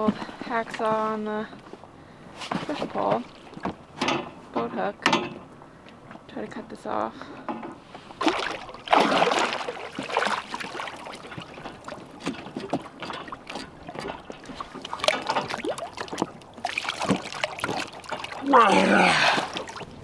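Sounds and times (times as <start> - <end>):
water splashing and dripping: 2.5 - 4.1, 8.0 - 20.0.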